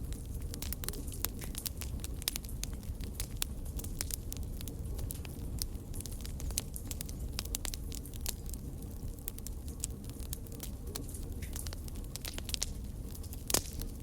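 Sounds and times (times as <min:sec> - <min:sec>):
fire crackling: 0:00.0 - 0:14.0
sharp pops and snaps: 0:11.0 - 0:14.0.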